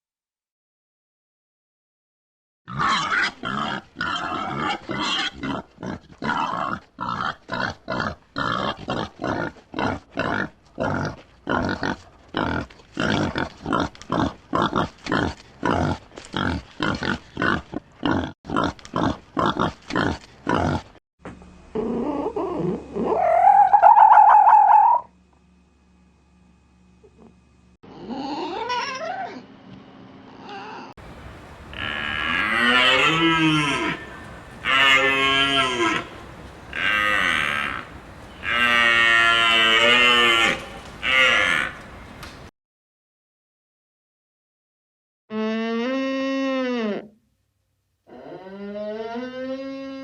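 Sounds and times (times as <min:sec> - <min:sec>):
wild boar grunting: 0:02.7 - 0:21.0, 0:30.4 - 0:41.9
rising animal call: 0:21.7 - 0:25.1, 0:30.3 - 0:42.2.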